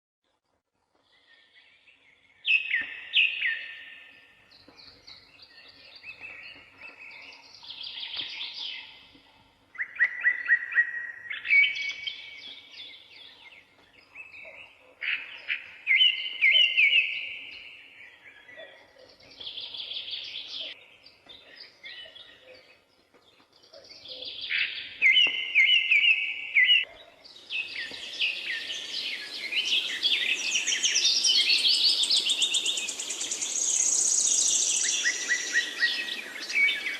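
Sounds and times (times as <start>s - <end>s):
songbirds singing: 0.9s - 36.9s
high chirping chorus: 24.1s - 36.9s.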